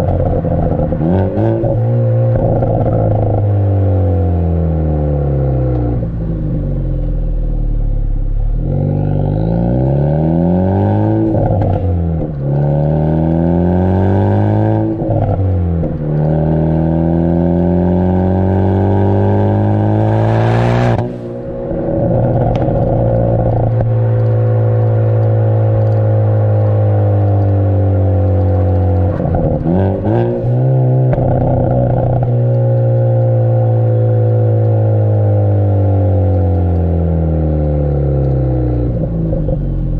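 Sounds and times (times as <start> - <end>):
exhaust crackles and pops: 0.0 - 3.5, 11.2 - 14.0, 20.0 - 39.9
car engine revving: 0.0 - 39.9.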